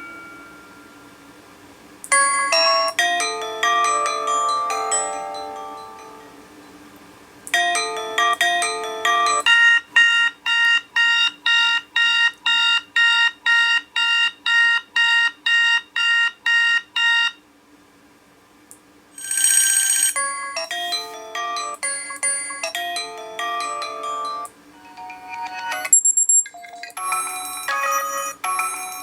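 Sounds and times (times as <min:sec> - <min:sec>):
phone chime melody: 0:00.0 - 0:01.1, 0:02.1 - 0:06.9, 0:07.6 - 0:11.2, 0:19.2 - 0:29.0
fast repeating chimes: 0:02.1 - 0:06.8, 0:19.2 - 0:29.0.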